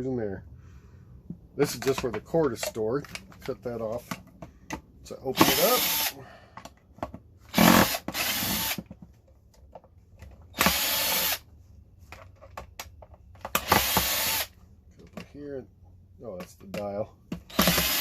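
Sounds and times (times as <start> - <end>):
power drill whirring: 5.4 - 6.2, 7.5 - 8.9, 10.5 - 11.4, 13.5 - 14.6, 17.5 - 18.0.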